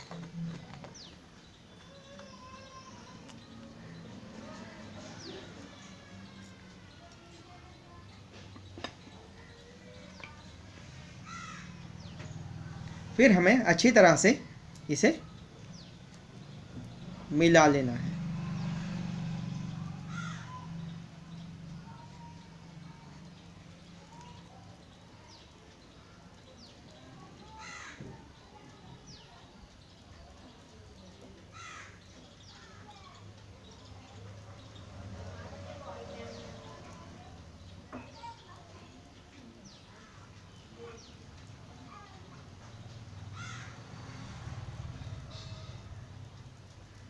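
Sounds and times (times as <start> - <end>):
birds chirping: 0.0 - 47.0
harsh bird call: 20.0 - 20.8.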